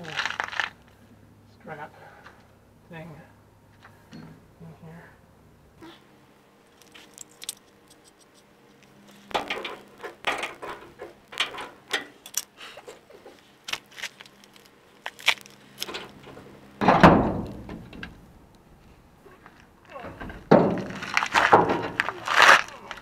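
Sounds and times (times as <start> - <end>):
metal tools clinking and rattling: 6.7 - 8.4, 9.0 - 12.5
loud heavy thud: 16.8 - 18.0.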